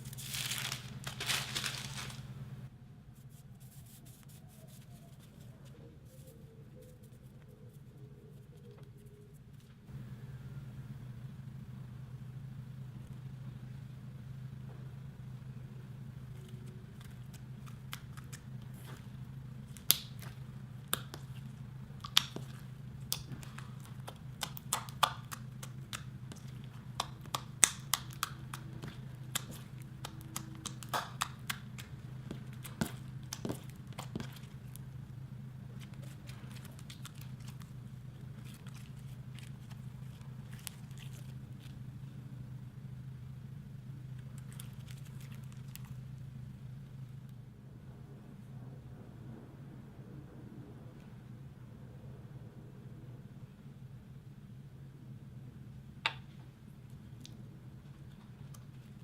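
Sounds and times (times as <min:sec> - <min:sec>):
slime kneaded by hand: 0:00.0 - 0:09.7, 0:16.2 - 0:42.4, 0:44.0 - 0:46.3
steady low hum: 0:00.0 - 0:59.0.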